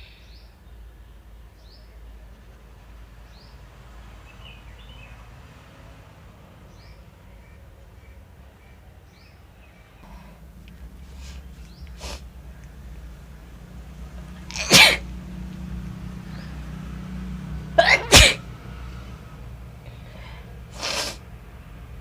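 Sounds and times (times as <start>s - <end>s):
person sniffing: 11.1s - 12.3s, 14.5s - 15.0s, 17.8s - 18.4s, 20.0s - 21.2s
woman sneezing: 14.5s - 15.0s, 17.8s - 18.4s, 20.8s - 21.2s.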